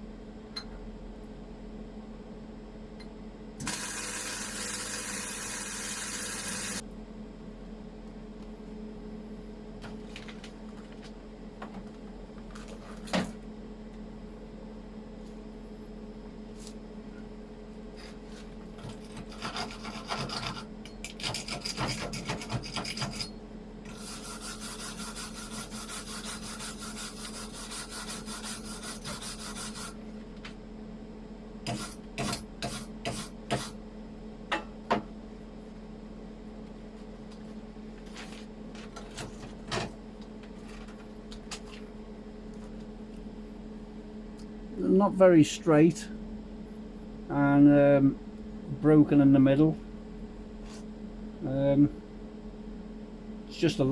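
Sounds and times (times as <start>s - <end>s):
welder humming: 3.6s - 6.8s.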